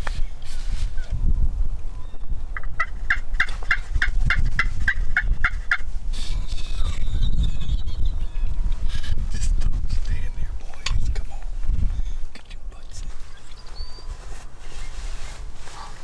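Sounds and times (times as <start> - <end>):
turkey calling: 2.0 - 16.0
steady low rumble: 4.8 - 13.7.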